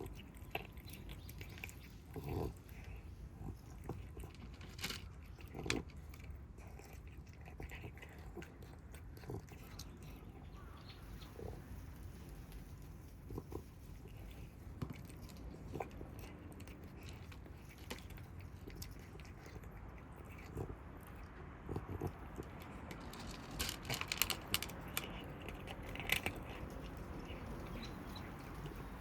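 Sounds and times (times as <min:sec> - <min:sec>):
kittens chewing and crunching food: 0:00.0 - 0:29.0.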